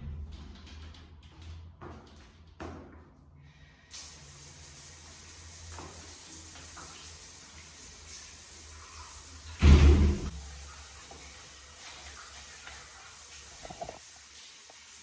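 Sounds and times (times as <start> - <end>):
tap water running into sink: 3.9 - 15.0
loud thump: 9.6 - 10.3.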